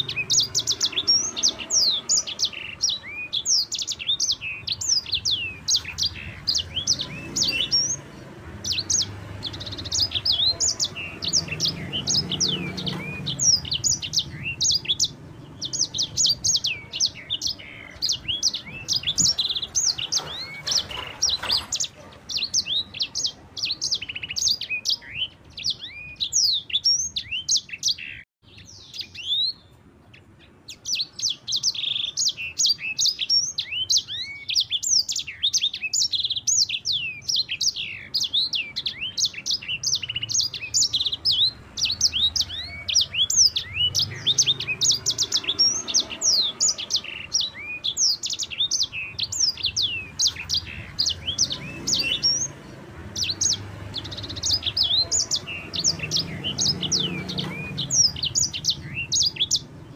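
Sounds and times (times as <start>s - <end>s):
songbird chirps and trills: 0.0s - 59.9s.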